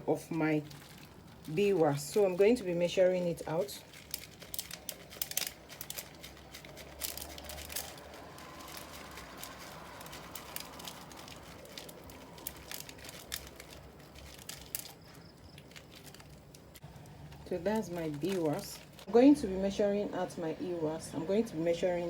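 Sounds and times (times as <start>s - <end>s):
beeswax clicking into container: 4.0s - 19.1s.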